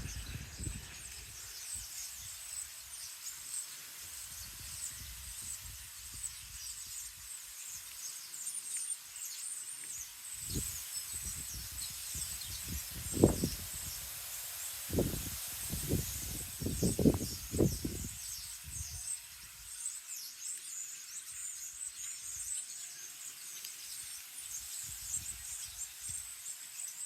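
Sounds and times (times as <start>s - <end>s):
wind gusting on microphone: 0.0s - 2.3s, 10.4s - 14.1s, 14.9s - 19.0s
small birds chirping: 0.0s - 27.0s.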